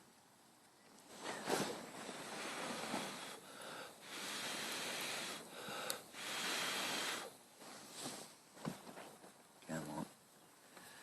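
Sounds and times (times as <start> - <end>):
breathing close to microphone: 1.3 - 8.2.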